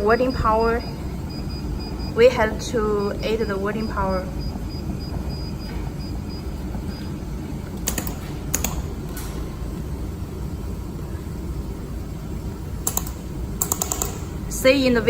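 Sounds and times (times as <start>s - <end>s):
welding machine humming: 0.0s - 15.0s
sharp clicks: 7.8s - 9.3s, 12.8s - 14.3s.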